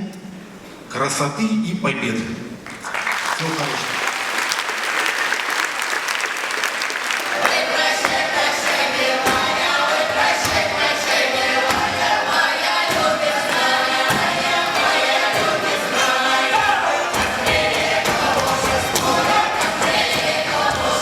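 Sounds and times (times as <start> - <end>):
choir singing: 5.8 - 21.0.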